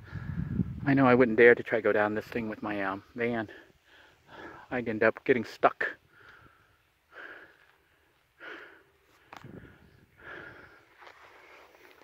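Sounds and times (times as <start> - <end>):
man breathing: 0.0 - 0.8, 3.5 - 4.7, 6.0 - 12.0.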